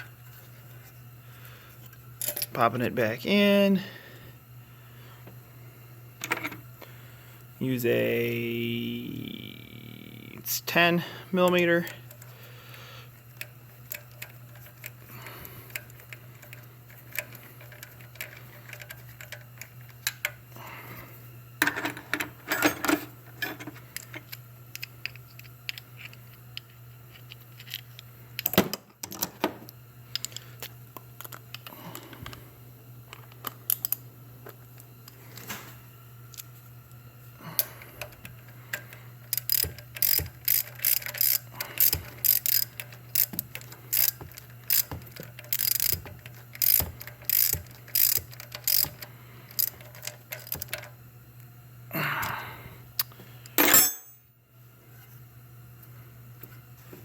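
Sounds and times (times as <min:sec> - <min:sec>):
steady low hum: 0:00.0 - 0:57.0
ratchet clicking: 0:39.3 - 0:50.9.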